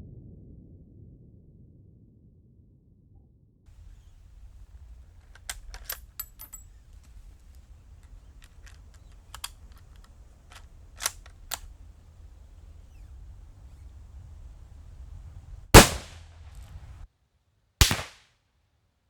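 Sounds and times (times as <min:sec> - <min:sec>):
rifle bolt clicking: 0:03.8 - 0:15.2.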